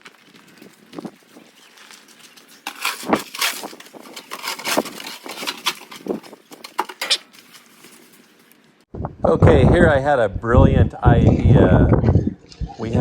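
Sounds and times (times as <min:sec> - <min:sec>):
crunching and scraping in snow: 0:00.0 - 0:08.6.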